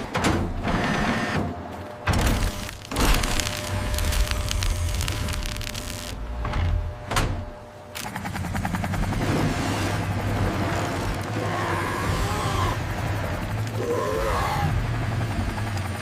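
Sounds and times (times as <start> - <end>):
cartoon vehicle engine: 8.0 - 16.0.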